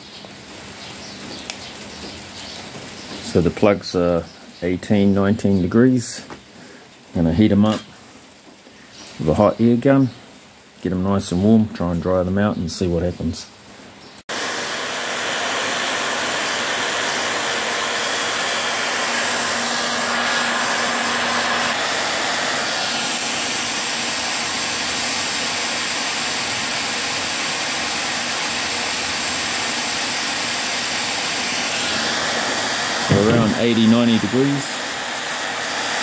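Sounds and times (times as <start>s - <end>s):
hot air gun blowing: 14.3s - 36.0s.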